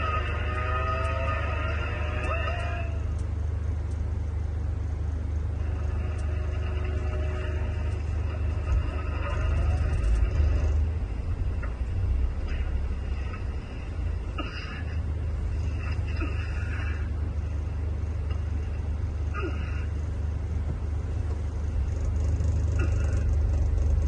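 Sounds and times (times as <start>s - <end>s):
coach diesel engine drone: 0.0s - 24.0s.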